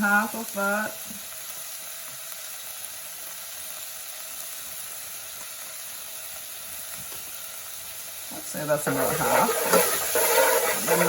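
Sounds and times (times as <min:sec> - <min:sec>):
garlic and onion sizzling in oil: 0:00.0 - 0:11.0.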